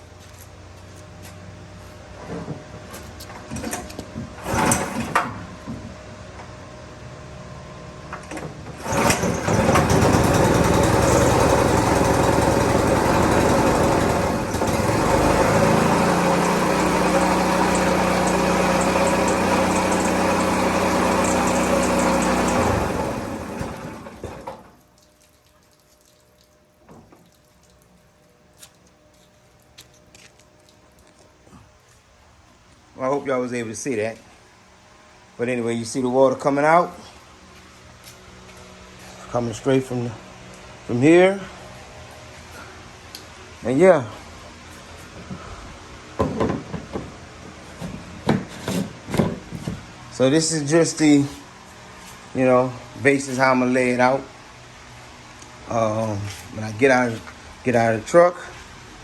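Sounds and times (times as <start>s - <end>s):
small gasoline engine running: 4.4s - 5.2s, 8.8s - 24.7s
recoil cord pulling rattle: 8.8s - 24.5s.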